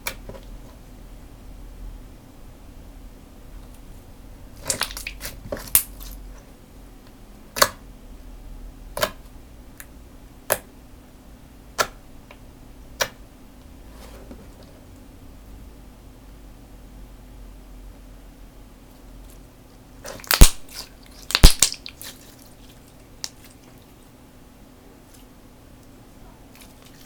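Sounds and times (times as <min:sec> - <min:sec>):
slime squished by hand: 0:04.6 - 0:06.2, 0:20.1 - 0:23.8
sharp popping of slime: 0:20.2 - 0:22.1.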